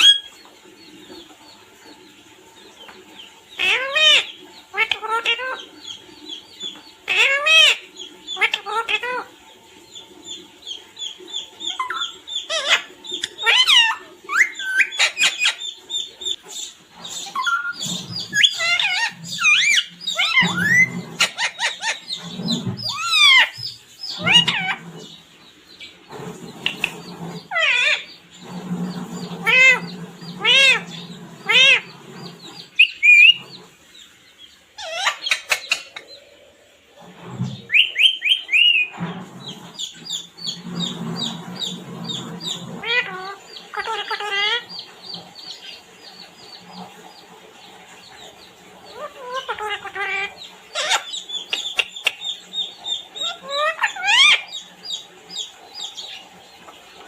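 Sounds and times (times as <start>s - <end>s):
parrot chirping and whistling: 0.0s - 0.3s, 11.7s - 15.7s, 17.3s - 24.8s, 32.6s - 33.4s, 37.7s - 38.9s.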